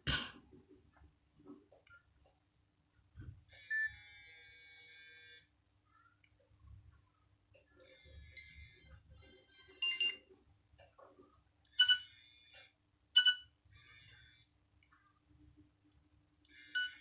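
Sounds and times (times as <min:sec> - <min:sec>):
short electronic phone tones: 0:09.8 - 0:10.2, 0:11.8 - 0:12.1, 0:16.8 - 0:17.0.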